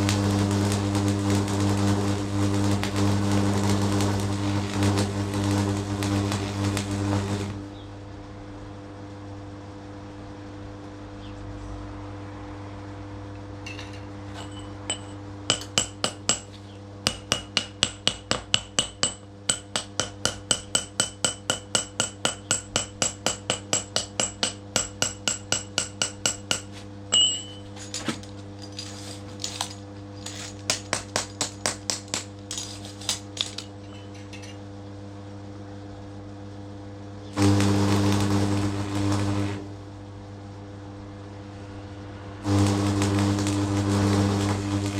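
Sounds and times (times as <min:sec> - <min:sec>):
steady low hum: 0:00.0 - 0:44.9
sharp metallic taps ringing: 0:17.1 - 0:27.7.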